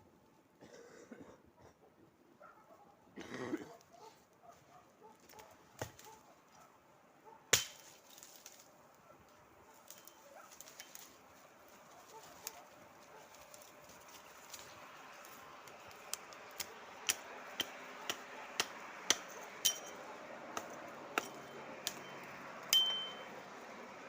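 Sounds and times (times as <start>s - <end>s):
sharp ringing knocks: 18.6s - 20.0s, 21.2s - 23.3s.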